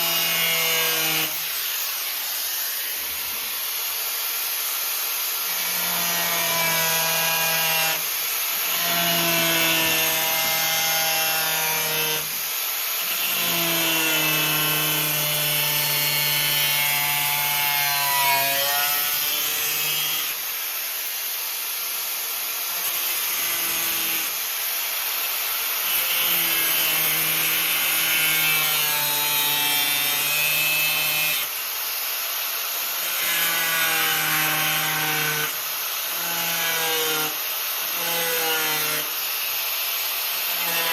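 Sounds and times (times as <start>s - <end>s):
power tool grinding steel: 0.0s - 21.6s, 22.7s - 31.5s, 32.9s - 40.9s.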